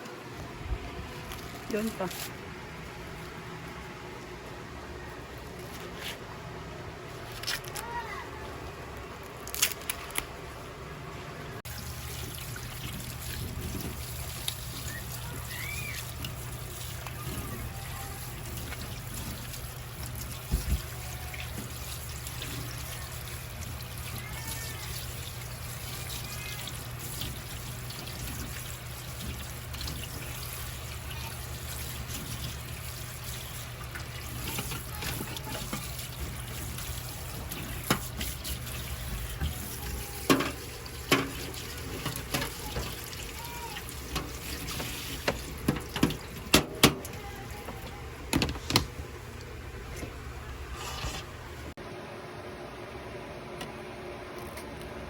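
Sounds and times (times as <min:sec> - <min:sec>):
water running: 0:11.6 - 0:51.8.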